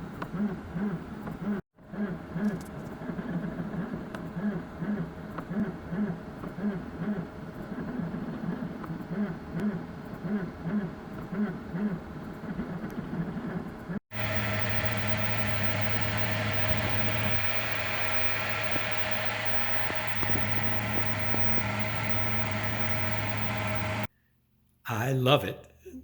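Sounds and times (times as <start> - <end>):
machine hum: 0.0 - 24.1
stepper motors whirring: 0.0 - 24.1
fan hiss: 14.1 - 24.1.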